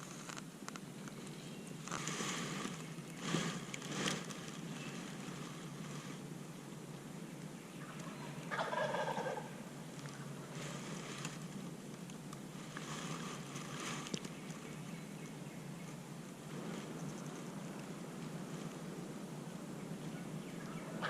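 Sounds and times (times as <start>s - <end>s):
turkey gobbling: 7.8s - 9.6s.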